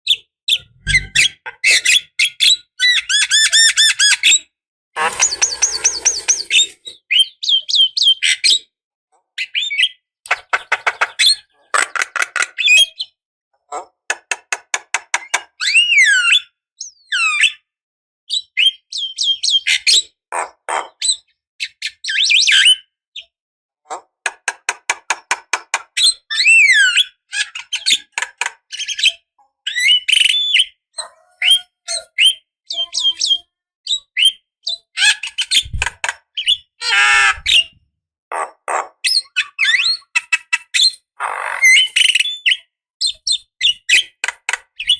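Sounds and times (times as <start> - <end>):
bird singing chattering song: 26.0 - 36.7.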